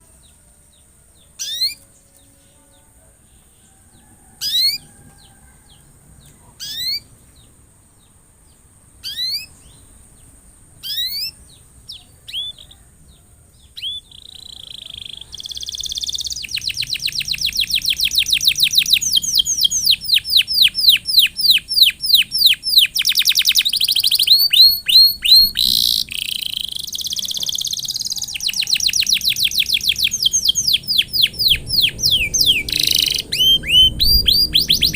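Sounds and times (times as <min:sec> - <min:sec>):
canary singing trills: 0:00.0 - 0:34.9.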